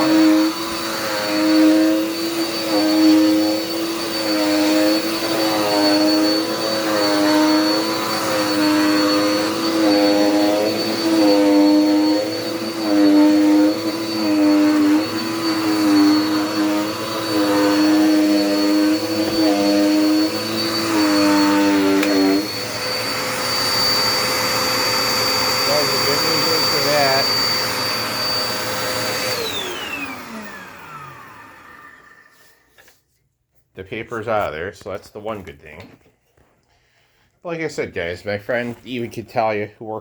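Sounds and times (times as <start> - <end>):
vacuum cleaner running: 0.0 - 32.9.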